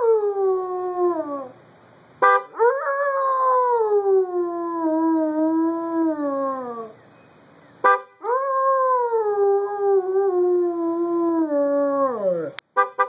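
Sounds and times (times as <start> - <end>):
car horn honk: 2.2 - 2.5, 12.8 - 13.0
dog howling: 8.2 - 12.6.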